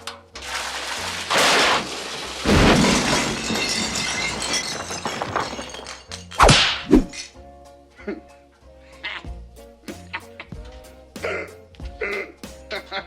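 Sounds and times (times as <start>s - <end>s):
debris clattering: 0.0s - 7.4s
background music: 0.0s - 13.0s
smashing and shattering crash: 0.4s - 7.3s.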